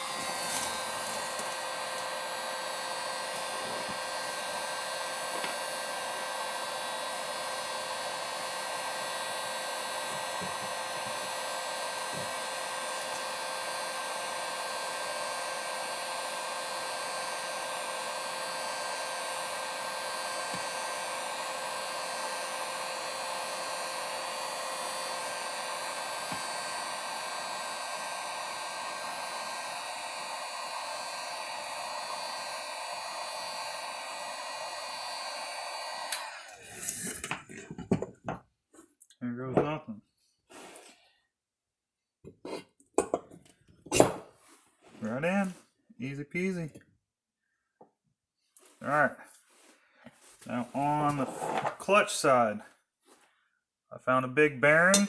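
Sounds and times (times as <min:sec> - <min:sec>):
heat gun blower hiss: 0:00.0 - 0:36.6, 0:50.6 - 0:51.3.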